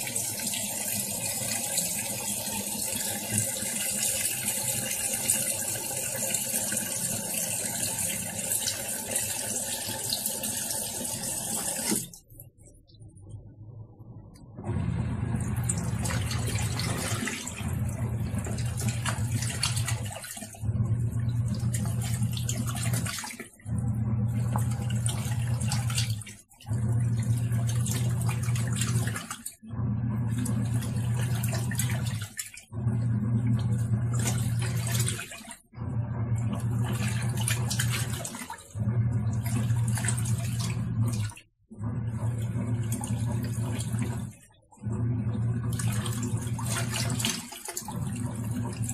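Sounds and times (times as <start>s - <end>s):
washing machine motor humming: 0.0s - 48.9s
water churning: 14.6s - 48.9s.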